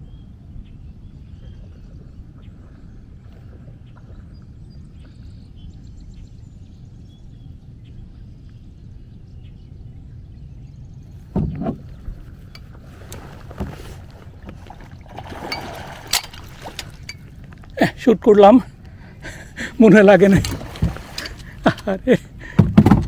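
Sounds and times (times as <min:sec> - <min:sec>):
faint birdsong: 0:00.0 - 0:22.6
low rumble: 0:00.0 - 0:22.6
loud thump: 0:11.3 - 0:11.9
water sloshing and splashing: 0:11.3 - 0:23.0.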